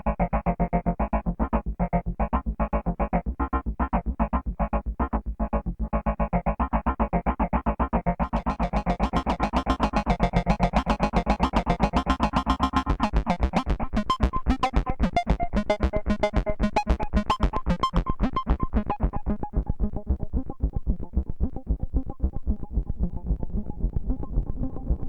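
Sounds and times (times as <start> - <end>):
low synth pulse: 20.3 - 25.0.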